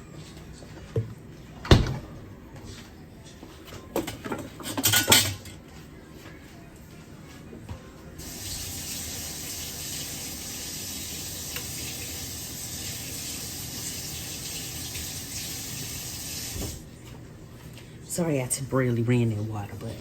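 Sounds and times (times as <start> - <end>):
kitchen faucet running: 8.2 - 16.8.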